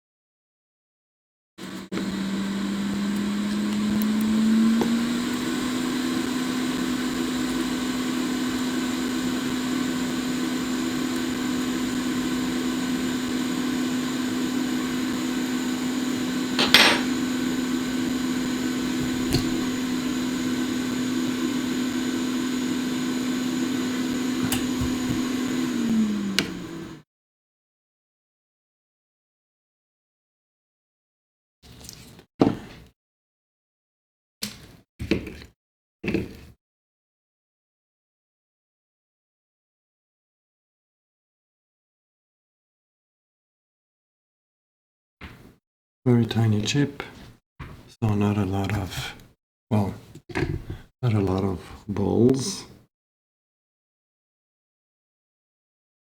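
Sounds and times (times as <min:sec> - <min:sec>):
hot air blower humming and hissing: 0:01.6 - 0:27.0.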